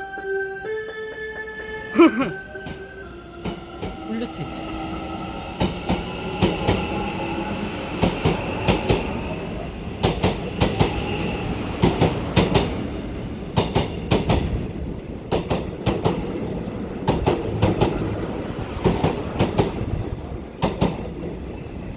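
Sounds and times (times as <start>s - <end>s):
train rumble: 2.6s - 21.9s
train wheels clacking over rail joints: 5.6s - 7.1s, 8.0s - 9.2s, 9.8s - 18.2s, 18.8s - 21.5s.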